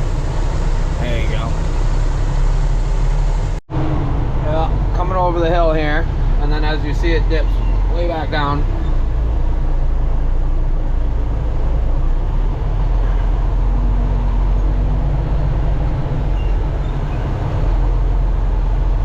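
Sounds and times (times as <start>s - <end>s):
truck engine and road noise: 0.0s - 19.0s.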